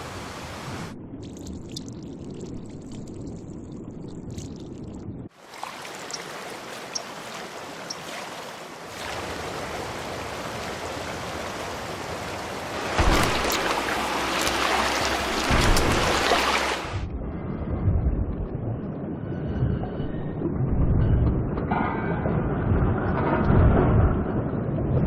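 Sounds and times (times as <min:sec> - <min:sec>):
trickling water hiss: 0:00.0 - 0:16.8
low rushing water: 0:00.0 - 0:17.1
water drips: 0:01.2 - 0:16.9.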